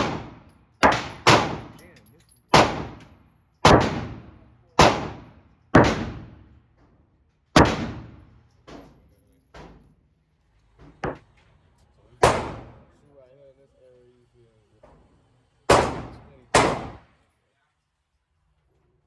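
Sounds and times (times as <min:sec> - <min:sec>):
pistol shots echoing: 0:00.0 - 0:01.8, 0:02.5 - 0:03.0, 0:03.6 - 0:06.4, 0:07.6 - 0:08.2, 0:12.2 - 0:12.8, 0:15.7 - 0:17.0.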